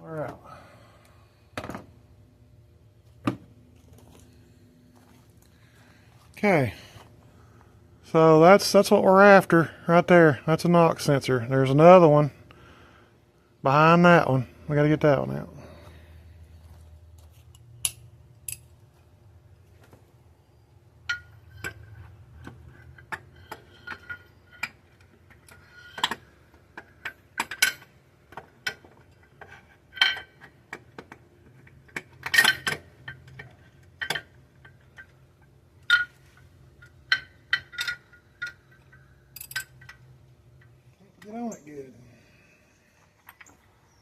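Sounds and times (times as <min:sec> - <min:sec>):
metal tools clinking on engine parts: 0:21.0 - 0:35.2, 0:35.8 - 0:41.9.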